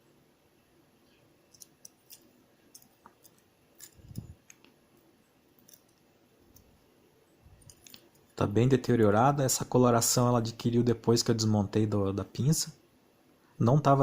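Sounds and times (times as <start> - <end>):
faint clicks and scrapes of handling: 1.0 - 6.8, 7.5 - 8.4.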